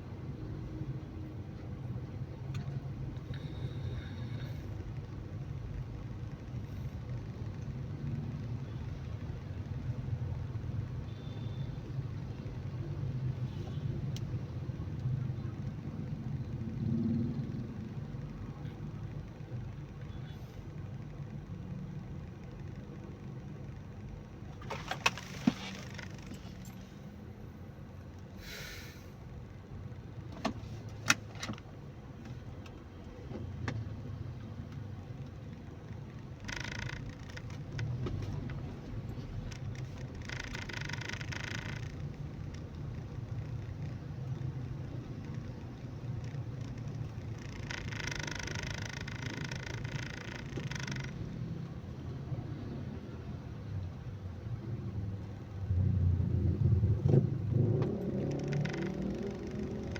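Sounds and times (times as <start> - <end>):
car engine and road rumble: 0.0 - 59.9
car cabin low hum: 14.1 - 28.6
short hiss: 28.4 - 29.2.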